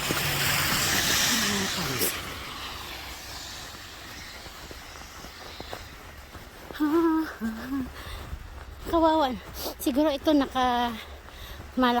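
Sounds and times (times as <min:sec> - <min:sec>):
footsteps in deep snow: 0:00.0 - 0:12.0.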